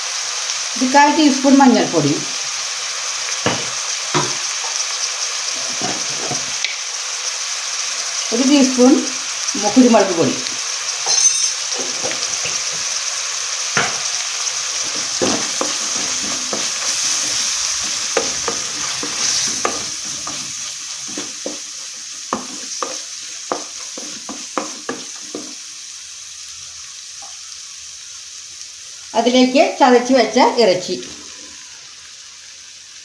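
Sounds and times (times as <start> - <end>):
food sizzling in oil: 0.0 - 33.0
spoon scraping and tapping pan: 3.4 - 4.8, 5.6 - 6.6, 11.0 - 13.0, 13.8 - 25.6.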